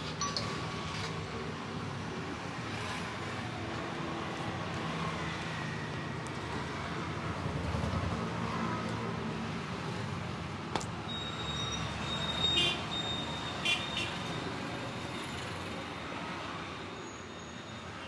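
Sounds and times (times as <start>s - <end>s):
short high beeps: 0.2s - 0.9s.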